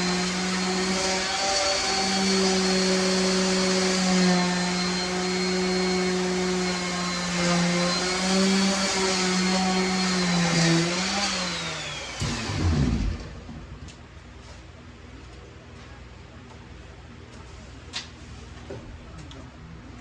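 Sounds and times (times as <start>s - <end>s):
electric motor whining and winding down: 0.0s - 13.4s.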